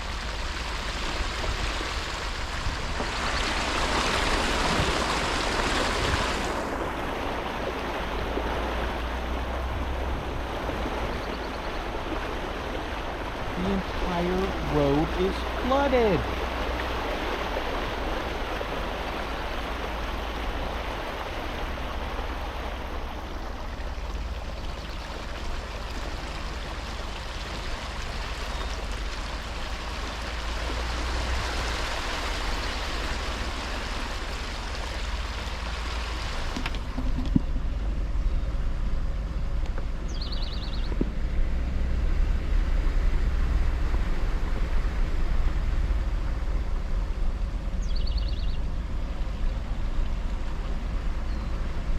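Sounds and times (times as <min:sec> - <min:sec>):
water spraying from tyres: 0:00.0 - 0:37.0
vehicle engine and road rumble: 0:00.0 - 0:51.9.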